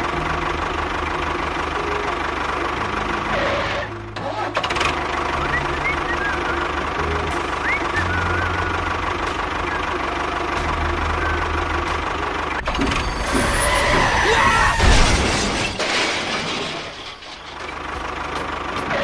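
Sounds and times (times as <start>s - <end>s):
small engine running: 0.0s - 14.6s.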